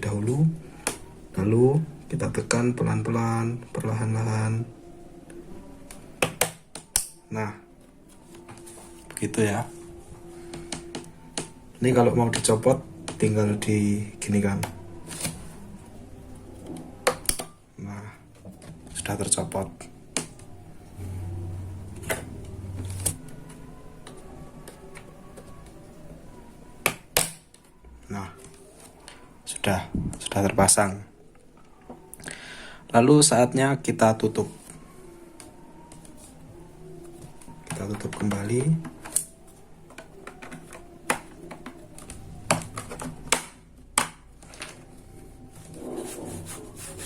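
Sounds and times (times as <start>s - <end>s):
plastic clips snapping shut: 17.1s - 17.5s
low hum: 20.0s - 26.4s.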